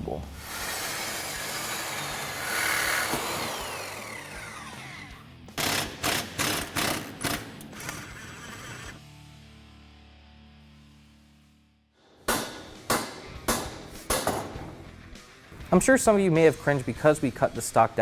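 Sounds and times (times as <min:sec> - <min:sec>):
power tool cutting steel: 0:00.4 - 0:09.0.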